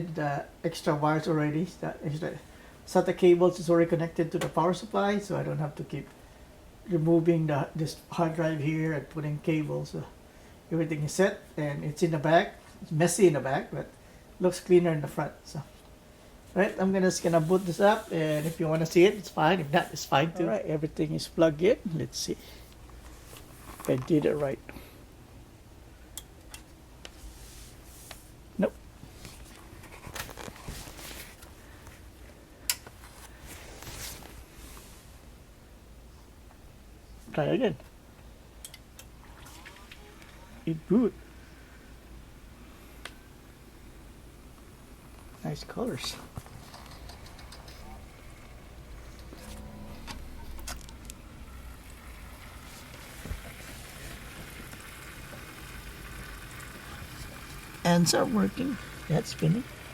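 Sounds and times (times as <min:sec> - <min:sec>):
man speaking: 0:00.0 - 0:06.1, 0:06.9 - 0:15.8, 0:16.5 - 0:22.6, 0:23.8 - 0:24.8, 0:28.6 - 0:28.8, 0:37.3 - 0:37.8, 0:40.6 - 0:41.2, 0:45.4 - 0:46.3, 0:57.8 - 0:59.7
computer fans spinning: 0:00.0 - 0:59.9
faint handling noises: 0:15.6 - 0:20.4, 0:22.4 - 0:24.8, 0:26.1 - 0:35.2.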